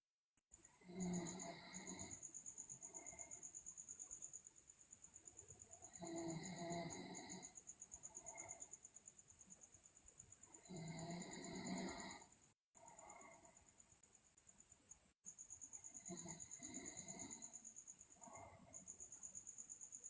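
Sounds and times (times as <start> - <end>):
cricket chirping: 0.5 - 20.0
girl snoring: 0.8 - 2.3, 5.9 - 7.6, 10.5 - 13.4, 15.9 - 17.6.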